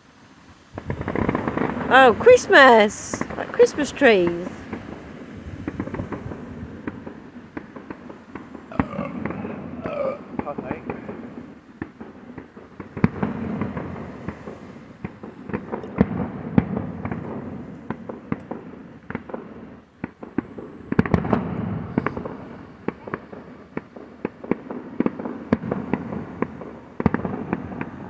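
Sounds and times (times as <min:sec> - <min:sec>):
fireworks bangs and crackles: 0:00.4 - 0:28.0
continuous rumble: 0:00.6 - 0:04.8.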